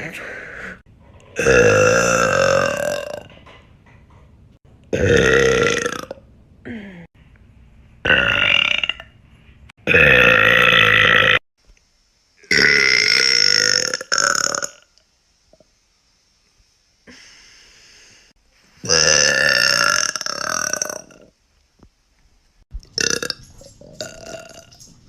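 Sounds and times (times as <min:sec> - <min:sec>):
woman burping: 0:01.4 - 0:03.2.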